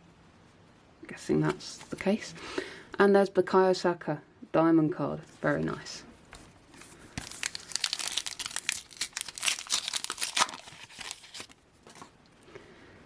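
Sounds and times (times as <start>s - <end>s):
wrapper tearing and crinkling: 6.8s - 12.1s.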